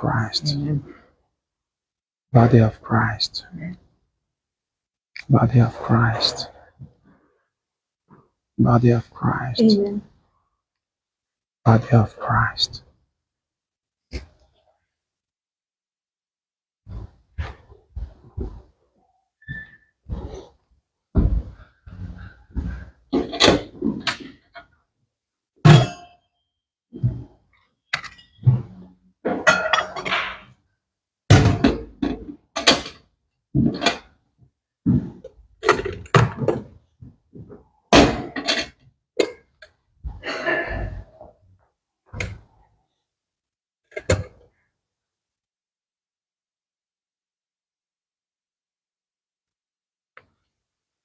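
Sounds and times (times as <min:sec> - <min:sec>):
objects knocking and clunking: 0:16.9 - 0:18.8, 0:19.4 - 0:24.8, 0:26.9 - 0:30.6, 0:31.3 - 0:42.6, 0:43.9 - 0:44.5.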